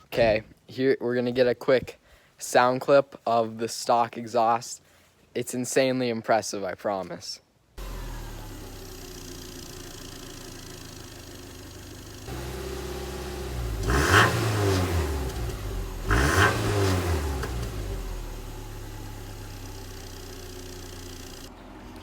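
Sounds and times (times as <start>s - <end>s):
car engine idling and revving: 7.8s - 22.0s.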